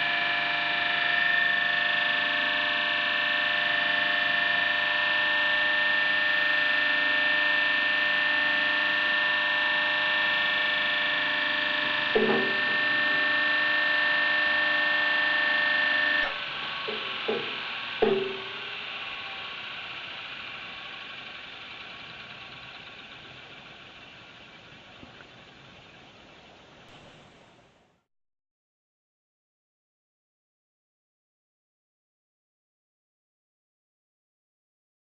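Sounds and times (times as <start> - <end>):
electric motor humming with whine: 0.0 - 25.9.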